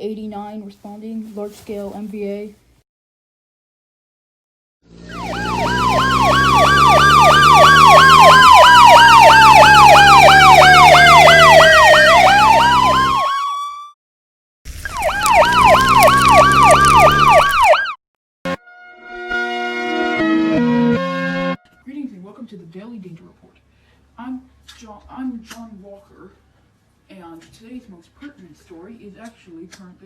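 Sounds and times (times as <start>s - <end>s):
emergency vehicle siren: 4.9s - 14.0s, 14.7s - 18.6s.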